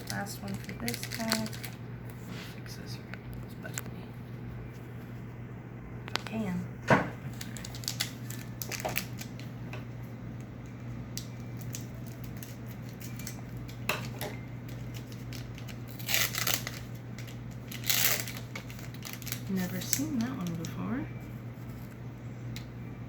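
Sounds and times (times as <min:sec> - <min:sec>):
cards and packaging rustling: 0:00.0 - 0:01.8, 0:07.3 - 0:09.5, 0:11.2 - 0:20.9
steady low hum: 0:00.0 - 0:23.0.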